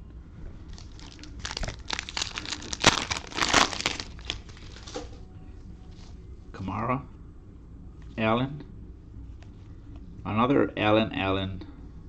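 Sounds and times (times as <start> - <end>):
plastic wrapper tearing and crinkling: 0.7 - 5.1.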